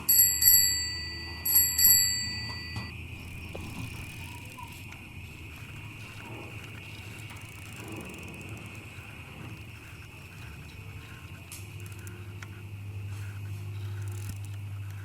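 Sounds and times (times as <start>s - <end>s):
steady high-pitched tone: 0.0s - 3.1s
bicycle chain ticking and rolling: 0.0s - 15.0s.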